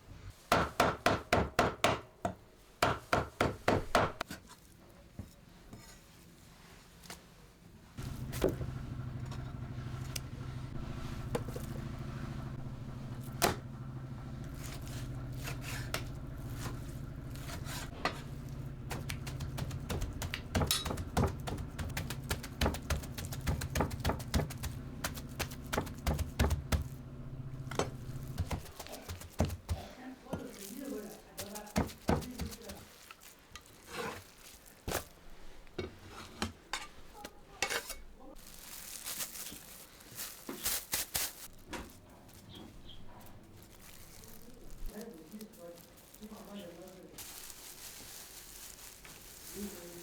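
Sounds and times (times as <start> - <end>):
electric motor humming: 8.0 - 28.7.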